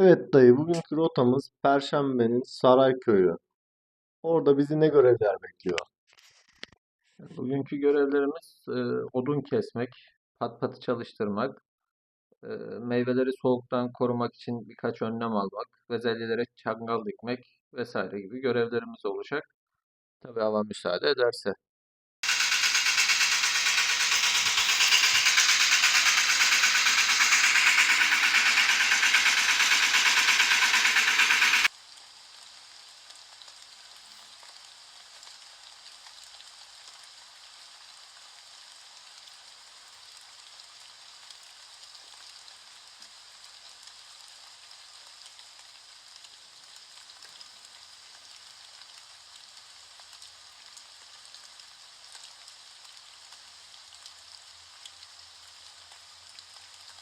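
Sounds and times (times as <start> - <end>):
rain hissing: 22.2 - 31.7.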